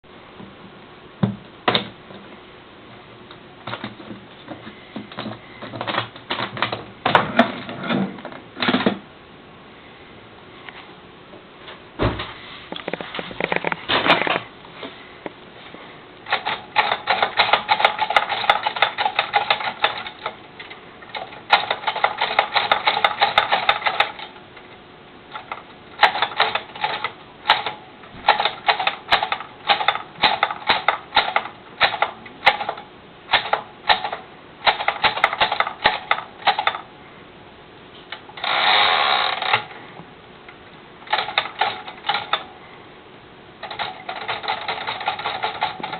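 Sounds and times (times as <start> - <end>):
typewriter rasp: 16.3 - 20.4, 21.1 - 24.3, 25.4 - 36.8, 41.1 - 42.4, 43.6 - 45.9.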